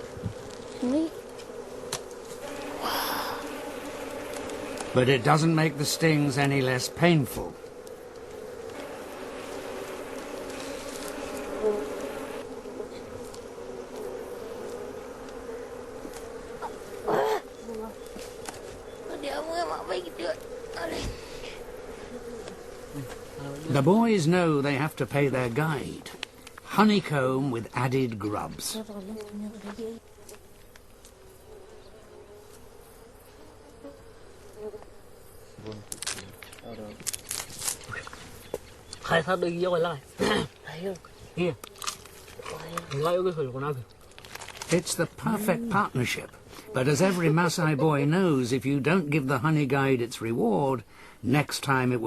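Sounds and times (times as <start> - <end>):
single bee buzzing close: 0.0 - 25.2, 28.8 - 36.6
bees buzzing: 0.0 - 52.0.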